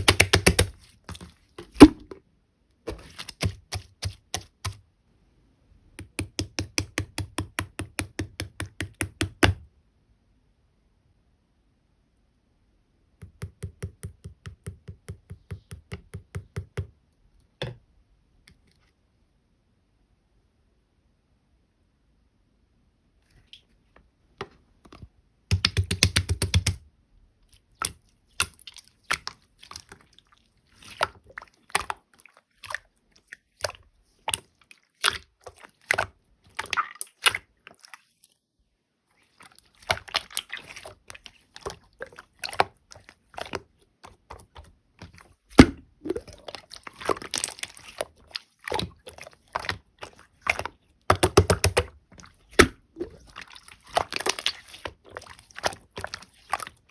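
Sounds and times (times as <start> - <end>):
slime rapid crackling: 0.0 - 0.9
hands squishing slime: 0.0 - 2.2, 2.9 - 4.8, 25.5 - 26.8, 27.6 - 38.4, 39.2 - 56.9.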